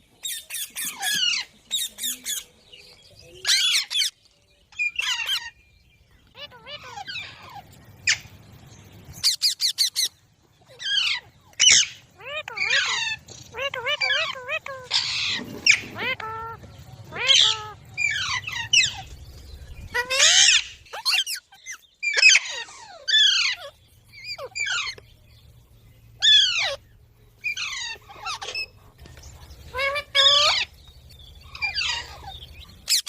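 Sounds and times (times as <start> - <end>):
parrot squawking: 9.2 - 10.1, 10.7 - 19.1, 19.9 - 25.0, 26.2 - 26.8, 27.4 - 28.9, 29.6 - 30.7, 31.5 - 33.0.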